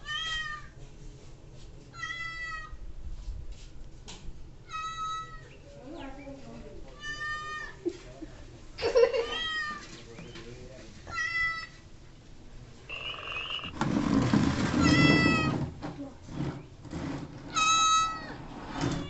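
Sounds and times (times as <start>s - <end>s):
cat meowing: 2.0s - 2.7s, 4.7s - 5.5s, 7.0s - 7.8s, 9.2s - 9.8s, 11.1s - 11.8s, 14.8s - 15.6s, 17.5s - 18.4s.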